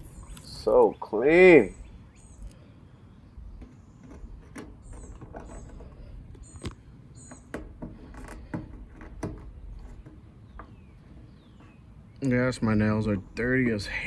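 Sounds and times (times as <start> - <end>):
tape squeaking: 3.6 - 11.9
tape peeling off metal: 3.6 - 12.3.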